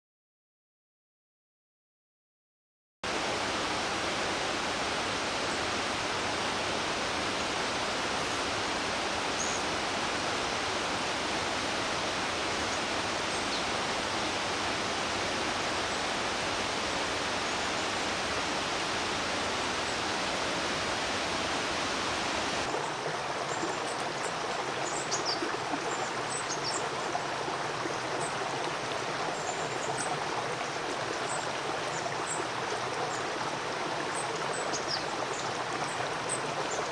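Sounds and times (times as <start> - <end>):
river rushing: 3.1 - 36.9
small birds calling: 22.8 - 36.9.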